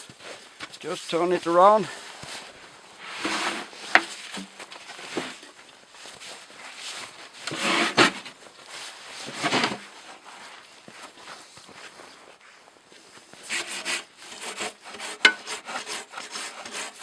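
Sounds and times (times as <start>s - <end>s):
metal stove scraping and shuffling: 3.0s - 5.6s, 7.0s - 8.3s, 9.2s - 9.9s.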